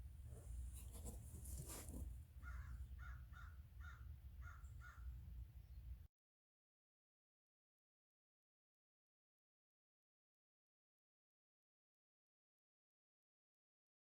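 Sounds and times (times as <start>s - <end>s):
bird calling: 2.4s - 5.1s.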